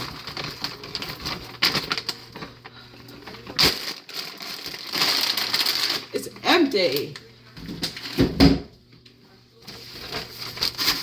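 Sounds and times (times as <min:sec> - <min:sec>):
packaging rustling: 0:00.0 - 0:06.5, 0:09.7 - 0:11.0.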